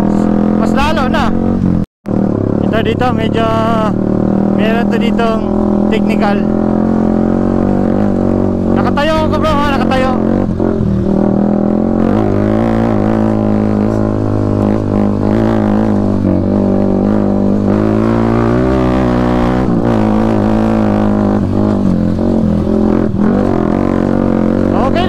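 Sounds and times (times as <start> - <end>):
motorcycle engine revving: 0.0 - 25.0.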